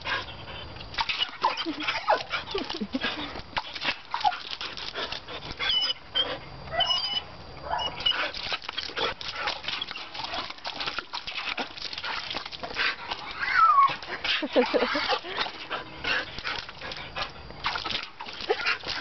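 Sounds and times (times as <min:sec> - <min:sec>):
dog whining: 0:05.6 - 0:08.2, 0:13.3 - 0:14.1.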